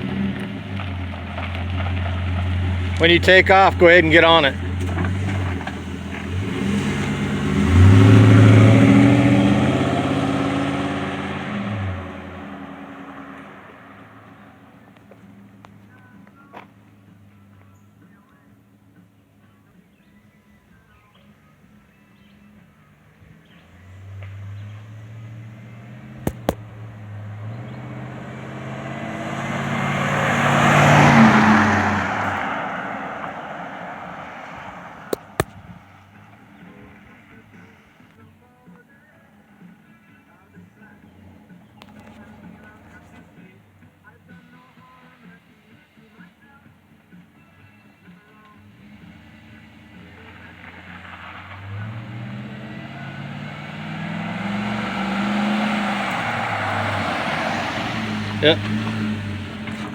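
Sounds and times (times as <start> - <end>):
truck exhaust rumble accelerating: 0.0 - 16.0, 23.2 - 38.2, 48.5 - 59.9
sharp clicks: 26.2 - 26.6, 35.1 - 35.6.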